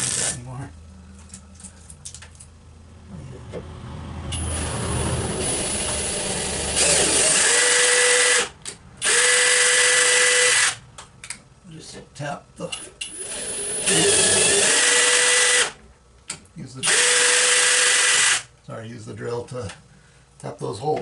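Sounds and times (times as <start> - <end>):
power drill whining: 4.3 - 10.8, 13.0 - 15.8, 16.8 - 18.5.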